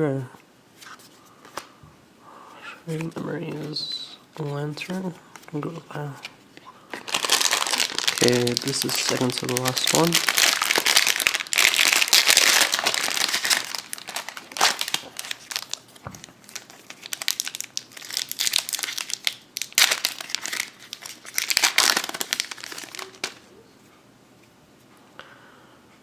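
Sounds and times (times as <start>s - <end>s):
foil wrapper tearing and crinkling: 6.9s - 23.4s.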